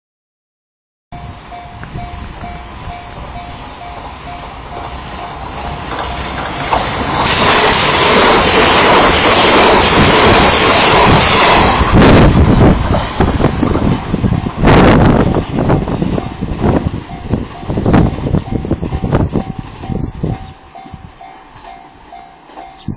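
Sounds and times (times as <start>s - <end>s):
crossing bell dinging: 1.1s - 7.1s, 15.9s - 22.9s
train wheel and rail noise: 1.2s - 22.9s.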